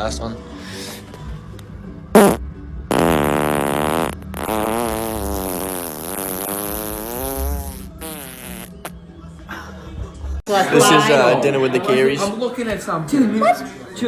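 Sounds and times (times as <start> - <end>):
man farting: 2.1 - 8.9.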